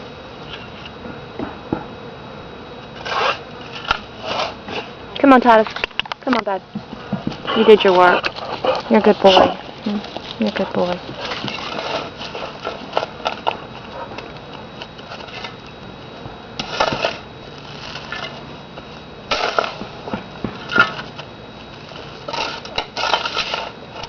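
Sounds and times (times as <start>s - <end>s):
scraping and rustling: 6.9s - 14.2s, 16.6s - 18.5s.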